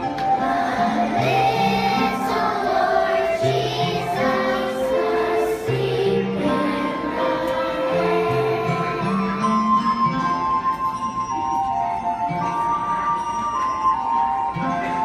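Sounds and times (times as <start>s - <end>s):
children's choir singing: 0.0s - 9.8s
instrumental accompaniment: 0.0s - 15.0s.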